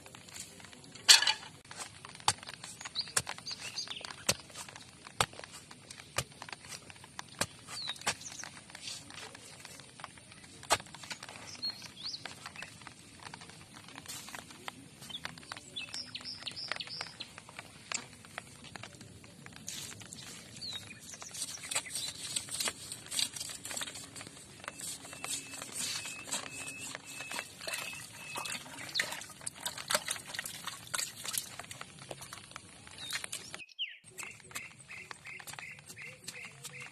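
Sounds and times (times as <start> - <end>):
handling clicks and rustling: 0.0 - 36.9
bird chirps: 24.6 - 29.2, 33.0 - 36.9.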